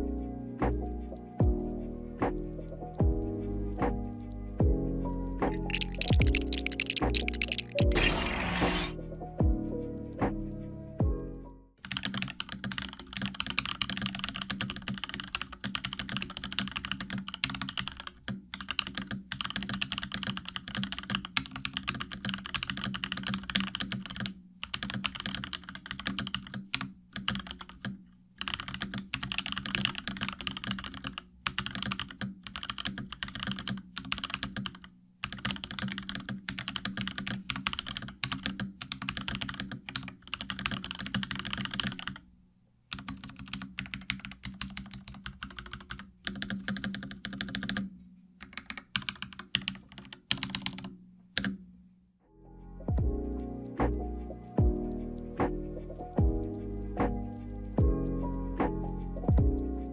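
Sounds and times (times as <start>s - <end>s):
mechanical keyboard typing: 5.5s - 9.0s, 11.8s - 42.2s, 42.9s - 51.6s.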